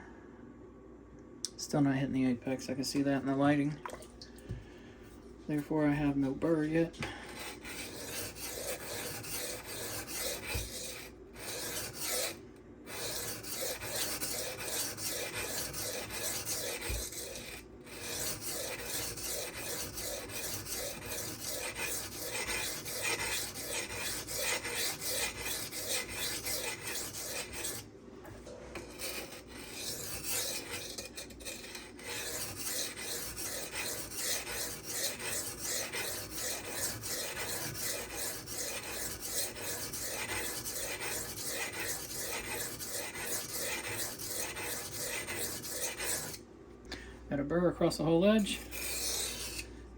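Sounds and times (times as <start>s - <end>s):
knife scraping on whetstone: 7.4s - 27.8s, 28.7s - 46.4s, 48.4s - 49.7s.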